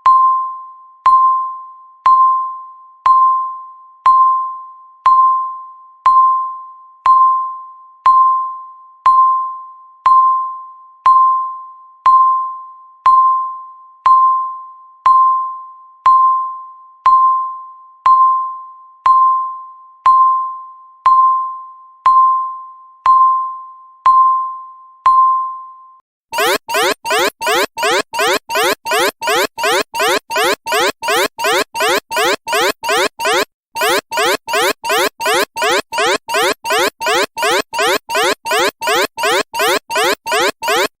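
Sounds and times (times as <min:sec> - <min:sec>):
alarm of rapid rising sweeps: 0:26.4 - 0:41.0
countdown timer beeps: 0:26.4 - 0:41.0.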